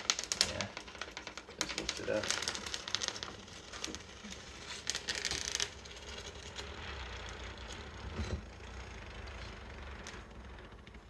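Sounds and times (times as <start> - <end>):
plastic crinkling: 0.0 - 10.2.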